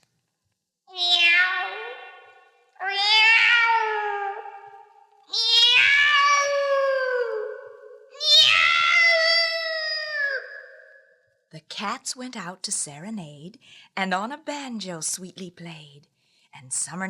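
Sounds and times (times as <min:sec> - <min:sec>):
cat meowing: 0:00.9 - 0:04.7, 0:05.3 - 0:10.6.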